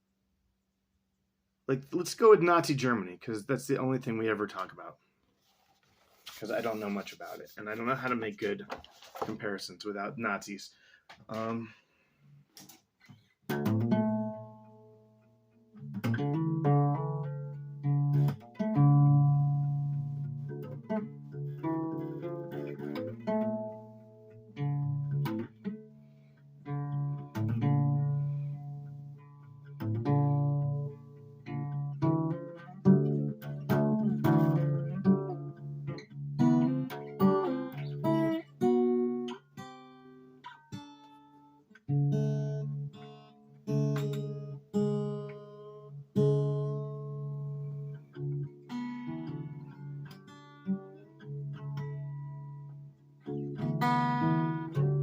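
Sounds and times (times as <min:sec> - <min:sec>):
plucked guitar notes and chords: 0:12.6 - 0:55.0.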